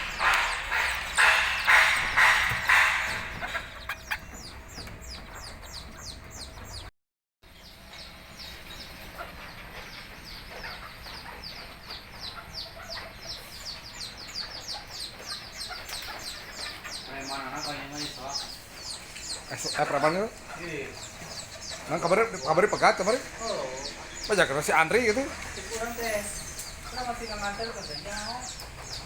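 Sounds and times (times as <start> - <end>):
loud noises: 0.0 - 4.2
chickens peeping: 0.0 - 6.9, 7.5 - 29.0.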